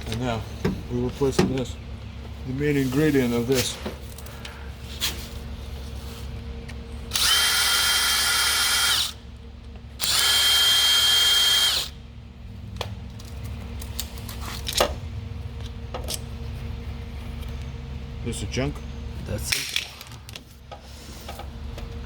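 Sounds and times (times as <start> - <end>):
power drill whining: 7.1 - 9.2, 10.0 - 12.0
parts being handled: 12.7 - 17.7, 19.4 - 22.0.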